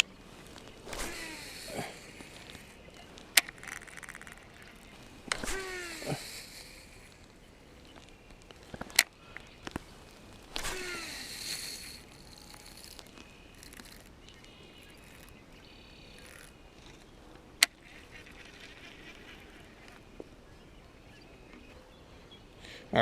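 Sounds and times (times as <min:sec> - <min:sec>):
faint birds calling: 0:00.0 - 0:23.0.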